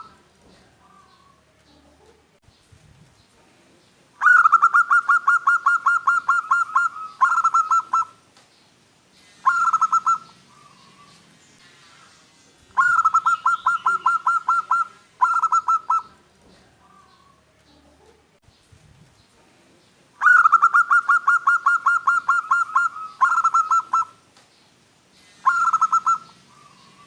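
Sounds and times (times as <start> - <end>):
dove cooing: 0.0 - 2.2, 4.2 - 8.2, 9.4 - 11.2, 12.8 - 18.2, 20.2 - 24.2, 25.4 - 27.0.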